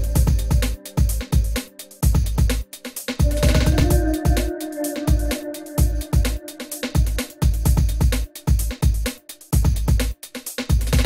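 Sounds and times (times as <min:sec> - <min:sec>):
electronic dance music: 0:00.0 - 0:02.6, 0:03.2 - 0:09.0
held synth notes: 0:03.2 - 0:08.5.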